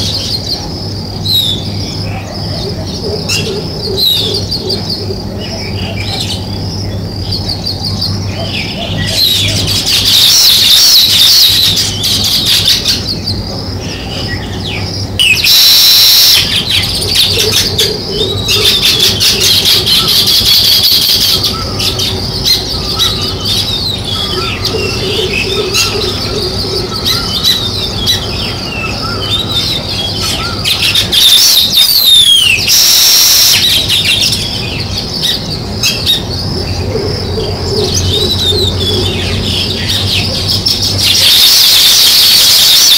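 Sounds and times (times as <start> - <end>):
sparrows chirping: 0.0 - 42.9
loud bursts of noise: 15.0 - 17.4, 30.8 - 34.7, 39.1 - 42.9.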